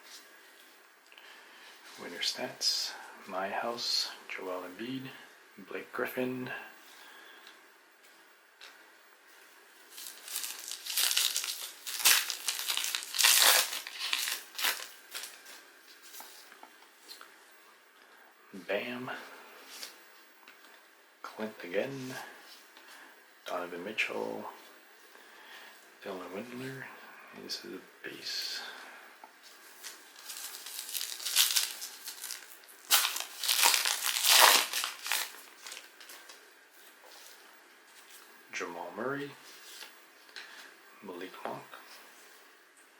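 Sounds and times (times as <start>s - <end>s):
plastic wrapper crinkling and tearing: 9.9s - 15.4s, 29.8s - 36.4s.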